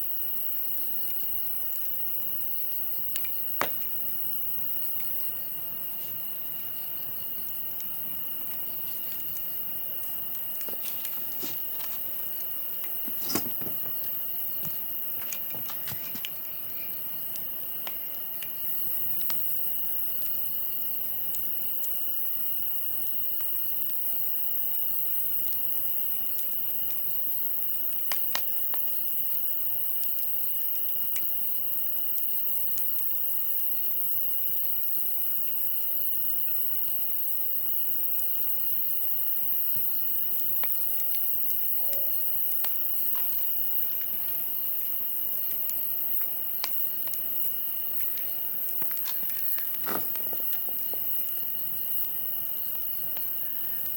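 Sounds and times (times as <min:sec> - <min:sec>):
campfire crackling and popping: 0:00.9 - 0:31.6, 0:32.4 - 0:53.9
insect trilling: 0:06.2 - 0:17.8, 0:41.3 - 0:45.3, 0:46.0 - 0:53.9.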